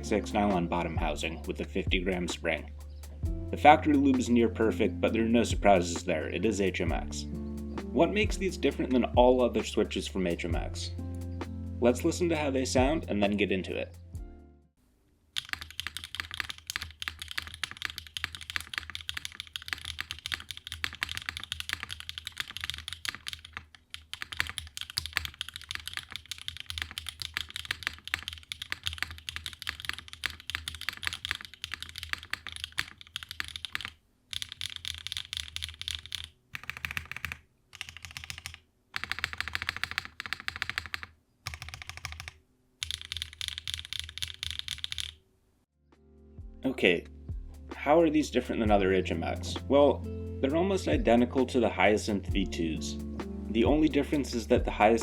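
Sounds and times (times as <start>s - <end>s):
typing on mechanical keyboard: 15.4s - 45.2s.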